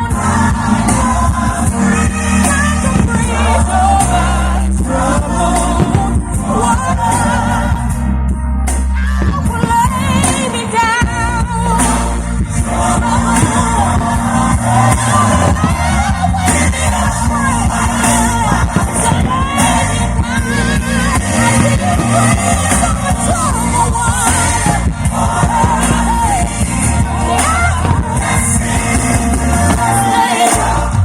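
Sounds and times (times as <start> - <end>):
heavy bass beat: 0.0 - 31.0
singer with vibrato: 9.0 - 31.0.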